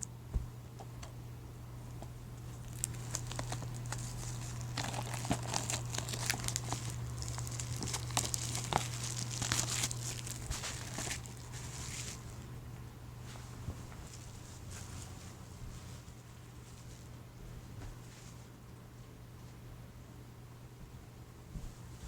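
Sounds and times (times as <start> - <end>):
plastic wrap crackling and rustling: 2.4 - 12.5.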